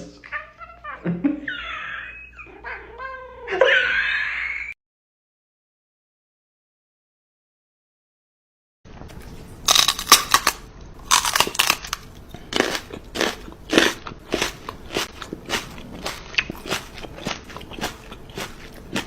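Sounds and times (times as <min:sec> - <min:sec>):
crunchy chewing: 0:09.6 - 0:19.0.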